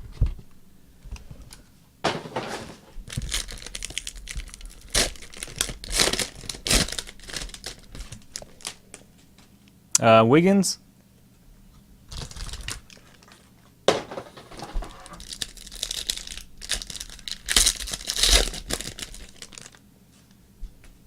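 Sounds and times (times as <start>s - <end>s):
wrappers crinkling and tearing: 3.0s - 9.0s, 12.1s - 13.5s, 14.6s - 19.8s.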